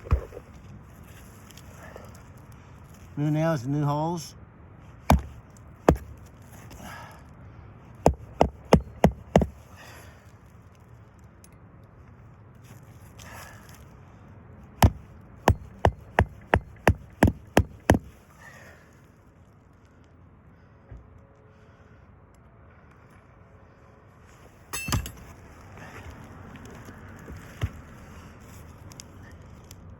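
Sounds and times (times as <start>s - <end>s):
hammer striking roofing nails: 5.1s - 6.2s, 8.0s - 9.6s, 14.8s - 18.2s.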